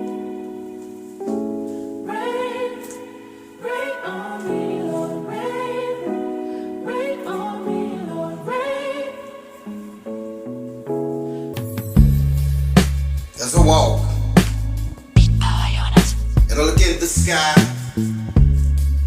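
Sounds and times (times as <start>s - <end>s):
held chords: 0.0s - 18.7s
wordless vocal phrases: 13.4s - 14.5s, 15.2s - 18.4s.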